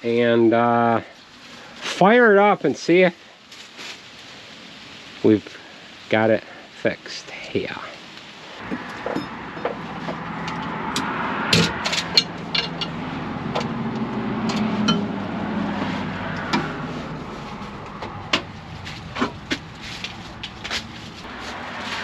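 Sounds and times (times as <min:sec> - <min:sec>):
hand tools clanking on metal: 0:08.7 - 0:13.8, 0:14.4 - 0:15.1.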